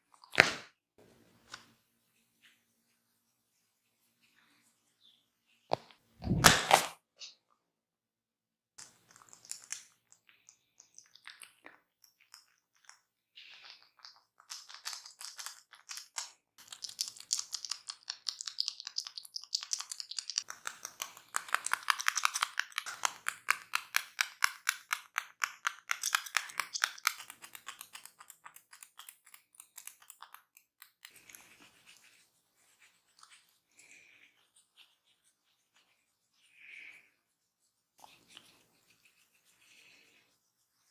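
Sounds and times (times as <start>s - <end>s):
hands rubbing skin and hair: 10.8s - 40.9s.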